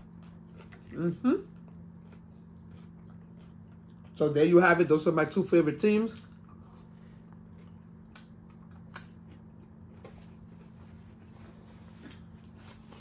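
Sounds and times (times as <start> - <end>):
clicks and crackles of eating: 0.0 - 4.2, 6.1 - 10.8
steady low hum: 0.0 - 13.0.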